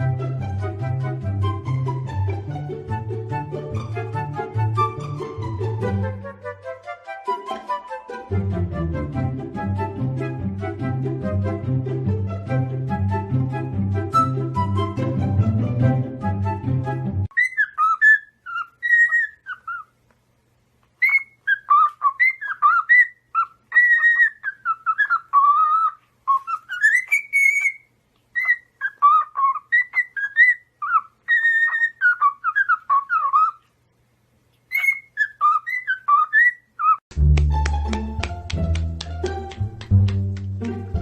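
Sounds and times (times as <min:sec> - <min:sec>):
parrot whistling a tune: 0:14.1 - 0:15.0, 0:17.3 - 0:19.9, 0:21.0 - 0:33.6, 0:34.7 - 0:37.0.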